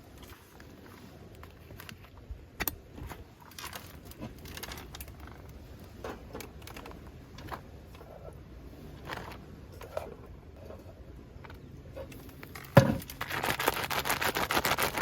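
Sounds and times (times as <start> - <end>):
low steady rumble: 0.0 - 15.0
small hard objects clattering: 12.1 - 15.0.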